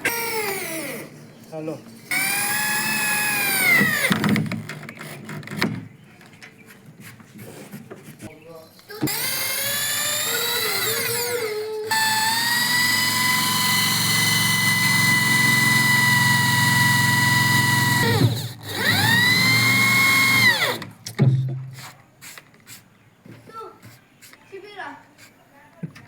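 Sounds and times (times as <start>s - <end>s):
power tool motor whine: 0.0s - 1.1s, 2.1s - 4.5s, 9.0s - 20.9s.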